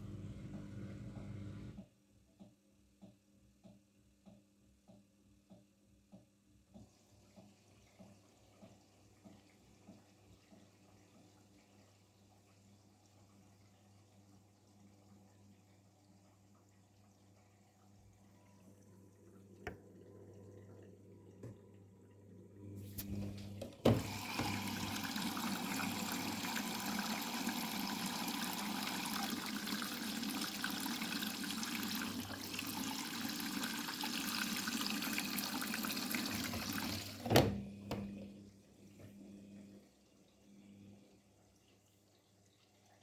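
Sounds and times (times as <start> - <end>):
water rushing into drum: 23.0 - 38.1
water valve thump: 36.5 - 38.1.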